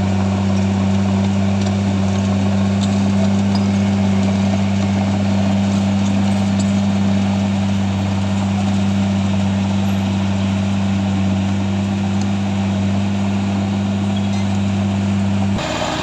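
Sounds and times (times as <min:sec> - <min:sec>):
diesel engine running: 0:00.0 - 0:16.0.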